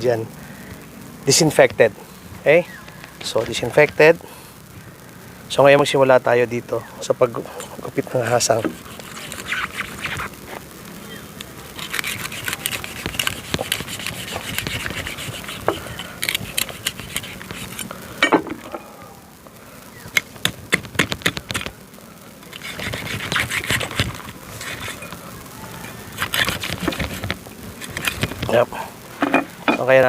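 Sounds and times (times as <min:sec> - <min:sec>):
blade scraping and snipping fish: 0:07.6 - 0:10.3, 0:11.8 - 0:17.9, 0:22.5 - 0:25.1, 0:26.2 - 0:28.4.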